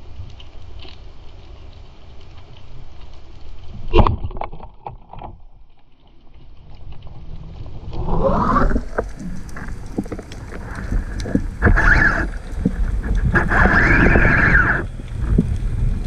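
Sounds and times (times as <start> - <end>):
crackling clicks: 0.0 - 16.0
water sloshing and rushing: 3.2 - 16.0
whistling hissing sounds: 11.6 - 12.4, 13.3 - 14.9.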